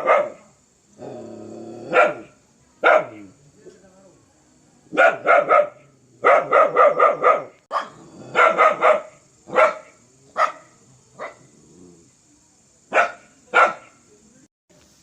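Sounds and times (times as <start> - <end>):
dog barking: 0.0 - 0.5, 1.9 - 3.3, 4.9 - 11.5, 12.9 - 14.0.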